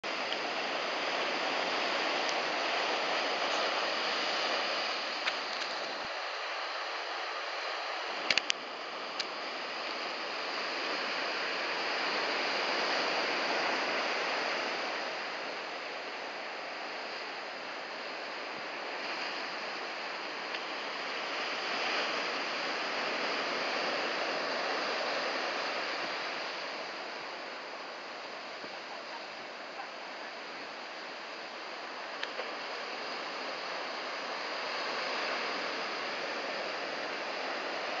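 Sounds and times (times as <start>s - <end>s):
ocean surf breaking: 0.0s - 38.0s.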